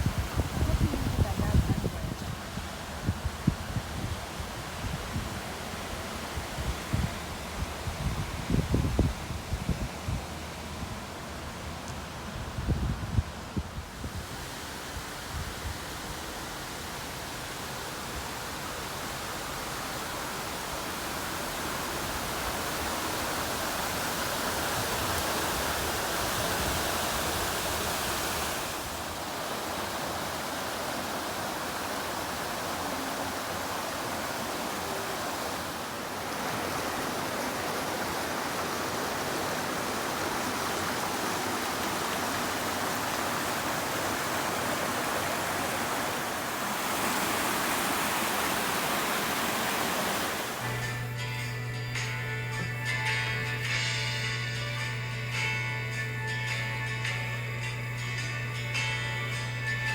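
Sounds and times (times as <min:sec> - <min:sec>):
mountain stream rushing: 0:13.9 - 0:59.9.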